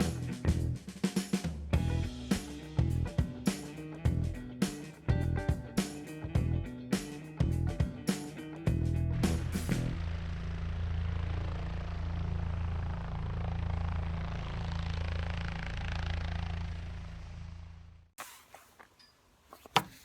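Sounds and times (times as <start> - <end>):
vehicle engine droning: 8.7 - 18.1.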